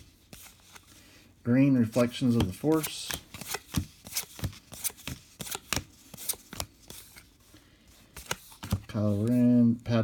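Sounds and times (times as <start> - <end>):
cards flicking and slapping: 1.9 - 7.3, 8.0 - 9.4.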